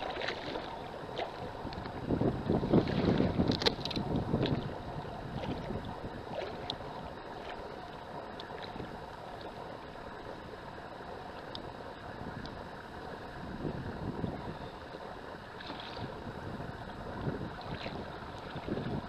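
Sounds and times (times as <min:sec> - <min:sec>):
wind on microphone: 0:00.0 - 0:07.1, 0:12.0 - 0:19.0
moving water from a boat: 0:00.0 - 0:19.0.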